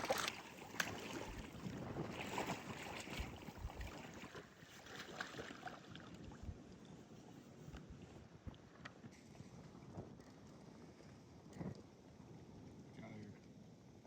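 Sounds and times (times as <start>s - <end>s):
splashing in floodwater: 0.0s - 6.4s.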